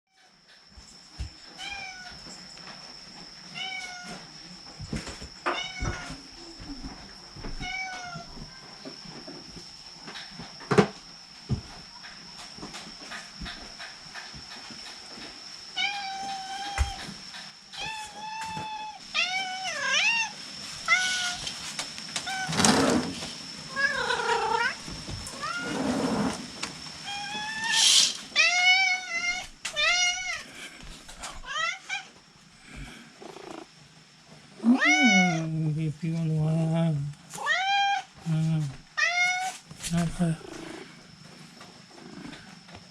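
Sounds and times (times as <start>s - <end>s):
cat meowing: 34.6s - 35.5s.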